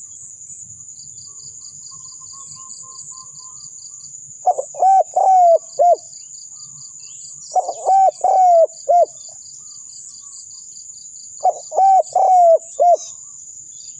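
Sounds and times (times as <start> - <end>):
insects droning and chirping: 0.0 - 13.9
dove cooing: 4.4 - 6.1, 7.5 - 9.2, 11.4 - 13.2.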